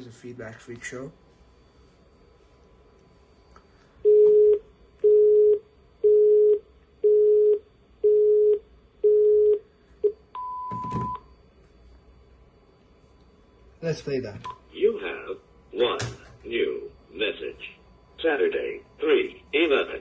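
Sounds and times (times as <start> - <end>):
telephone beeps: 4.0 - 11.3.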